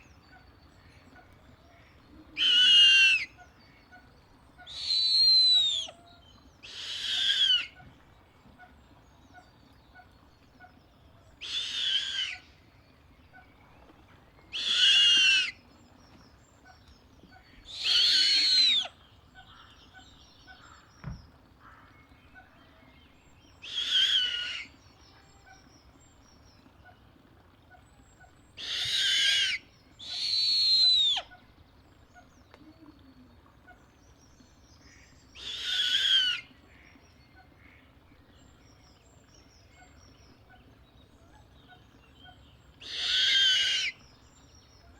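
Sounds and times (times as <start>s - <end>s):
owl screeching: 2.4s - 3.3s, 4.7s - 5.9s, 6.6s - 7.8s, 11.4s - 12.5s, 14.5s - 15.6s, 17.7s - 18.9s, 23.6s - 24.7s, 28.6s - 31.3s, 35.4s - 36.5s, 42.8s - 44.0s.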